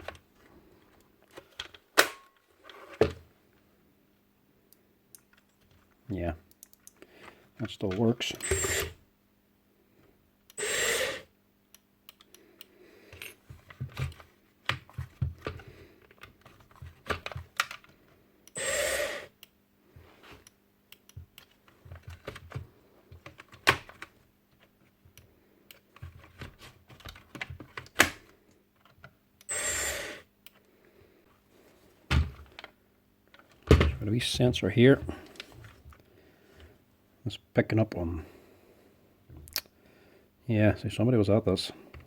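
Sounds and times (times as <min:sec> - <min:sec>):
nail gun motor spinning up: 0:08.4 - 0:09.0, 0:10.6 - 0:11.3, 0:18.6 - 0:19.4, 0:29.5 - 0:30.2.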